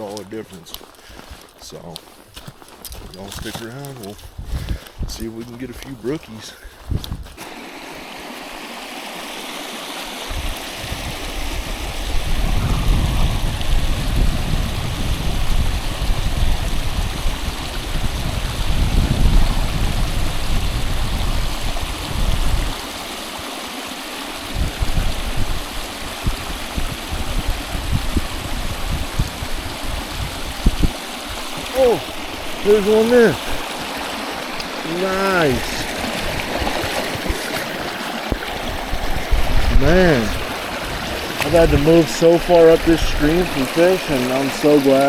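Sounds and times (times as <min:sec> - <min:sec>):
stream rushing over rapids: 0:07.4 - 0:45.0.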